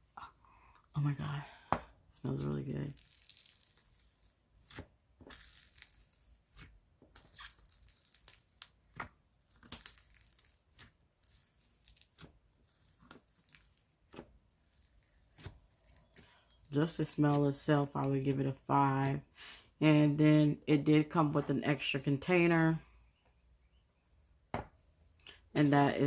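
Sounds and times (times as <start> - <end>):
slime crackling and rustling: 2.2 - 19.2.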